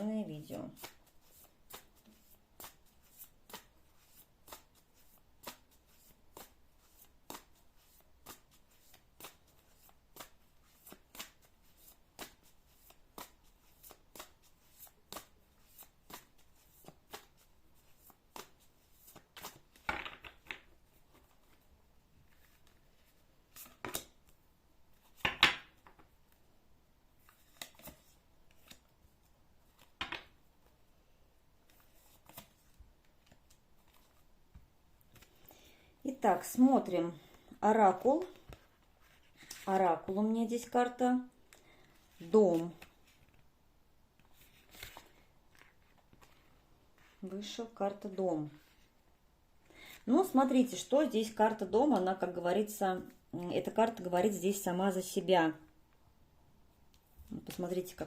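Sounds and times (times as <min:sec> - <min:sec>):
cards slapping: 0:00.8 - 0:21.2, 0:27.3 - 0:28.9.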